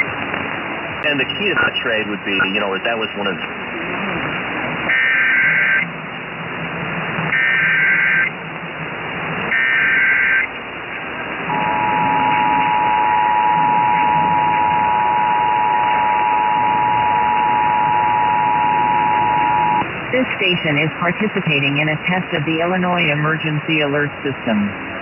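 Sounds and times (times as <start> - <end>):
radio hiss: 1.0 - 3.8, 11.4 - 24.8
two-tone attention signal: 11.5 - 19.8
warbling digital data tones: 11.5 - 19.8.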